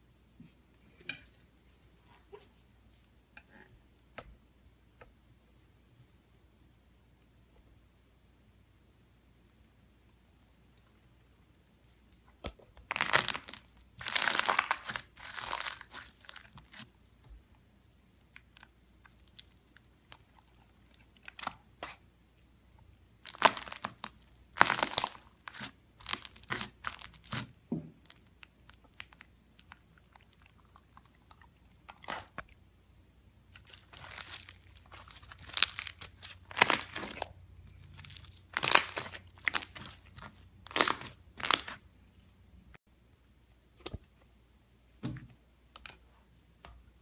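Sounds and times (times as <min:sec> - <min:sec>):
slime crackling and popping: 0:12.5 - 0:17.0, 0:23.2 - 0:32.5, 0:33.5 - 0:41.8.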